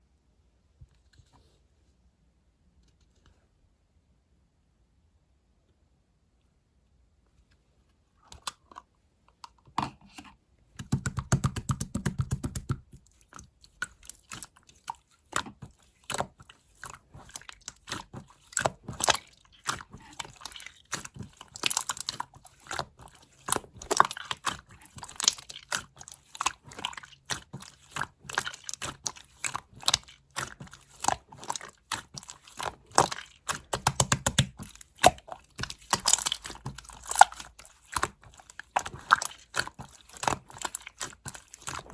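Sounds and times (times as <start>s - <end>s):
slime squishing: 10.8s - 41.9s.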